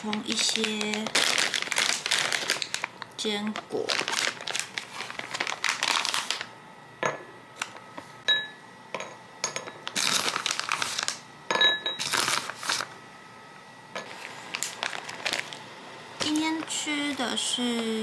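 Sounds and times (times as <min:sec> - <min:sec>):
plastic snack bag crinkling: 0:00.0 - 0:06.6, 0:09.8 - 0:11.2, 0:12.0 - 0:12.9, 0:14.1 - 0:17.9.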